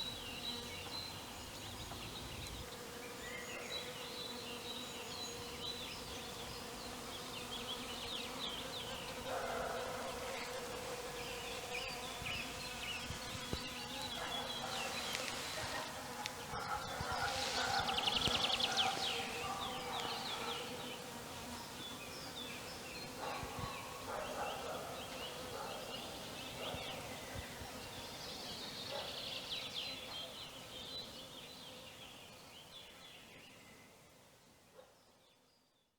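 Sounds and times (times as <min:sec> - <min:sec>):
small birds chirping: 0:00.0 - 0:33.6
insects buzzing: 0:00.1 - 0:28.8.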